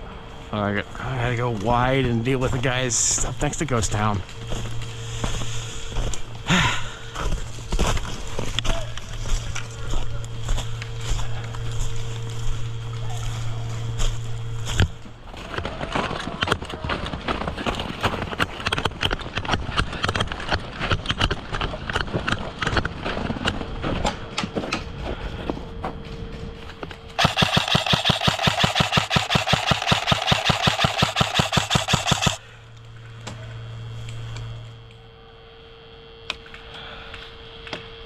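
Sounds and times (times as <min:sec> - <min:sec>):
footsteps: 0:01.6 - 0:06.4, 0:07.2 - 0:15.5
airsoft gun rapid fire: 0:27.2 - 0:32.4
gear knocking: 0:27.2 - 0:32.4.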